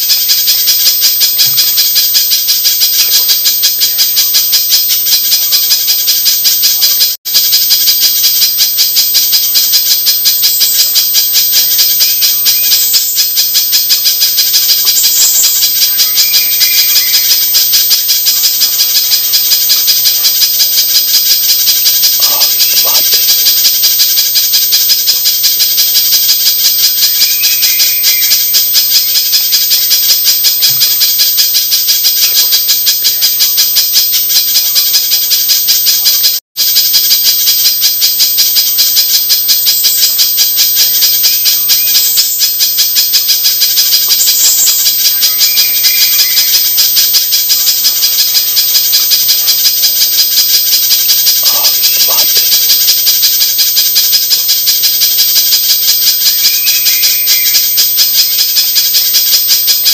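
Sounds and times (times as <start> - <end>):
recorded bird calls: 10.6 - 25.5, 26.1 - 29.5, 40.8 - 42.6, 43.7 - 53.2, 54.8 - 58.4.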